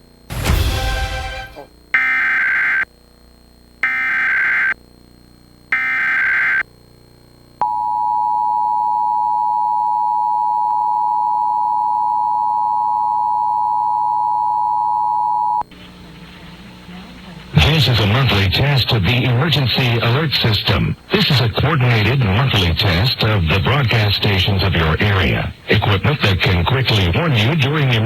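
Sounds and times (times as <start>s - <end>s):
steady dual-tone alarm: 0.5s - 2.9s, 3.8s - 4.8s, 5.7s - 6.6s, 7.6s - 15.8s.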